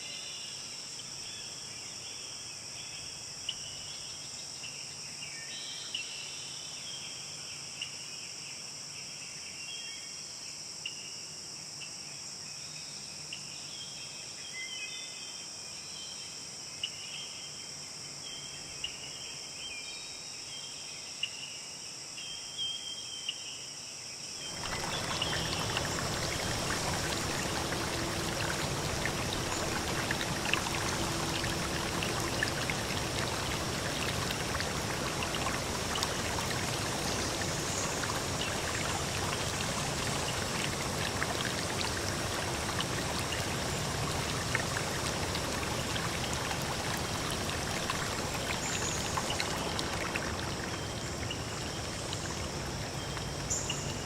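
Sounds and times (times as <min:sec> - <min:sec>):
high insect chorus: 0:15.6 - 0:54.0
running water rushing: 0:24.5 - 0:54.0.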